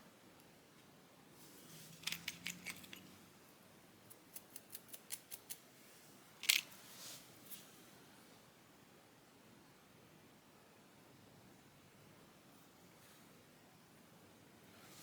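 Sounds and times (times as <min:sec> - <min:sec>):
small metal tools clicking: 0:02.0 - 0:03.1, 0:04.3 - 0:05.6, 0:06.4 - 0:06.7.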